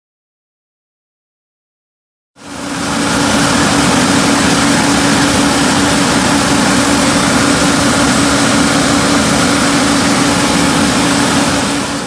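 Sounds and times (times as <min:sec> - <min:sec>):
broad rushing noise: 0:02.4 - 0:12.0
farm machinery drone: 0:02.4 - 0:12.0
steady whine: 0:02.4 - 0:12.0.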